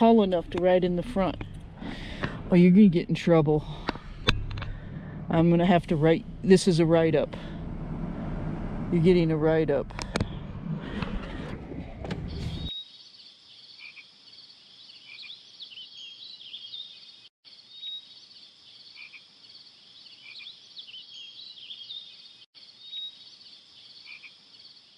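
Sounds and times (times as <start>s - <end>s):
frogs and insects chorus: 12.8s - 16.2s, 17.5s - 24.9s.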